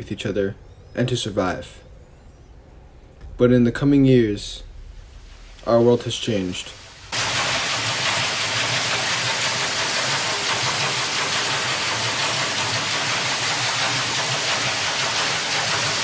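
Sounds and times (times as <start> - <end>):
underwater rushing hiss: 5.2 - 16.0.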